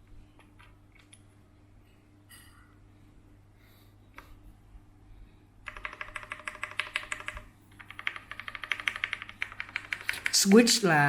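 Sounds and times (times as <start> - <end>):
typing on mechanical keyboard: 5.6 - 10.6.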